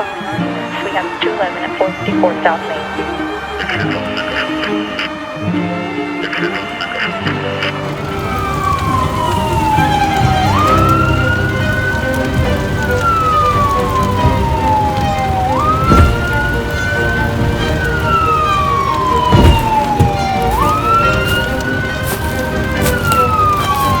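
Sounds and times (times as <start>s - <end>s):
dramatic background music: 0.0s - 24.0s
police siren wailing: 0.0s - 24.0s
sharp bangs: 7.8s - 24.0s.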